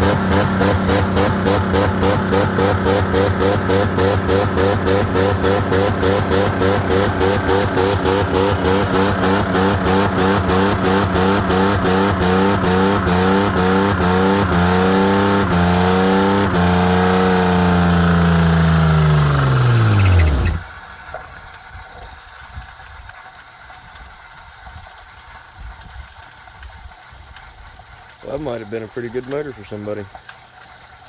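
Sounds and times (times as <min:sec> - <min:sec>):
engine surging at high revs: 0:00.0 - 0:20.7.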